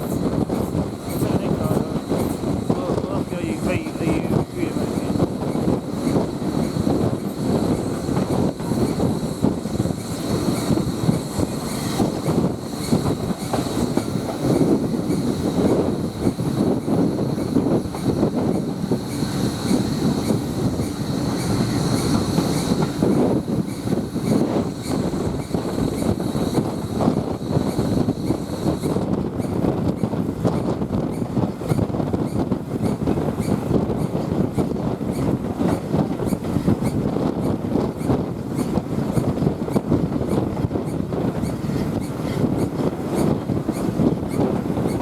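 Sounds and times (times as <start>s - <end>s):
train coach rumble: 0.0s - 45.0s.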